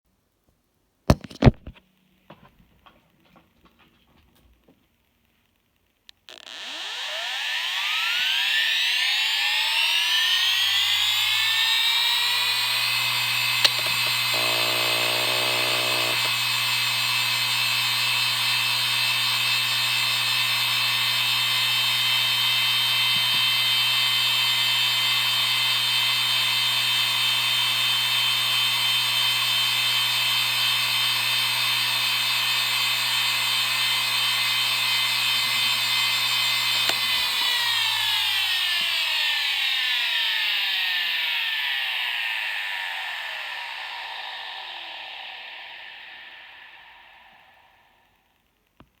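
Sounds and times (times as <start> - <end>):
hard drive whine: 6.2 - 49.0
hard drive click: 13.6 - 16.3.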